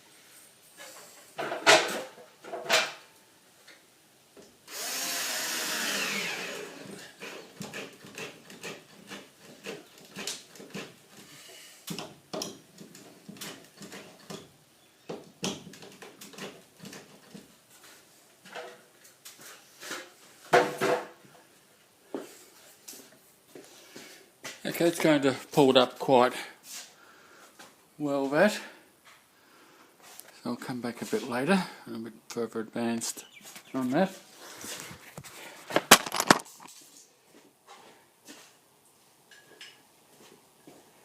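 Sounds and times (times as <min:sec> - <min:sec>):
cordless drill driving a screw: 0:04.7 - 0:07.0
handling clicks and knocks: 0:35.7 - 0:36.7.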